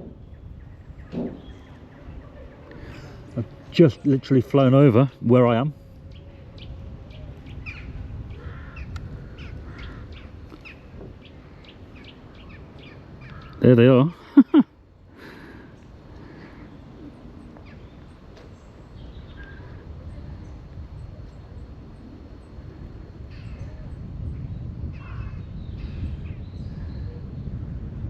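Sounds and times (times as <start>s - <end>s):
distant crows cawing: 7.6s - 18.2s, 24.9s - 25.9s.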